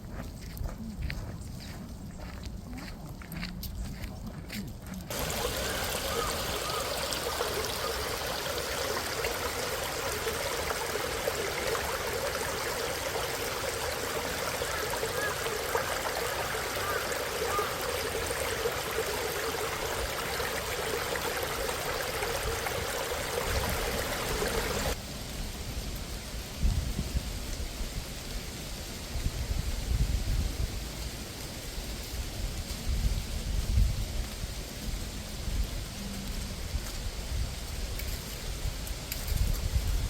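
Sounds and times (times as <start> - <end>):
stream flowing: 5.0 - 25.0.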